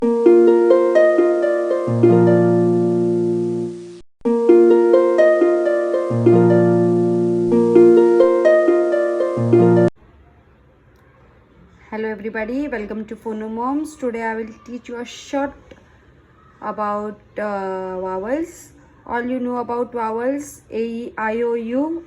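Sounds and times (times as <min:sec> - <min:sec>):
plucked harp-like melody: 0:00.0 - 0:03.7, 0:04.3 - 0:09.9
held bass notes: 0:00.0 - 0:09.9.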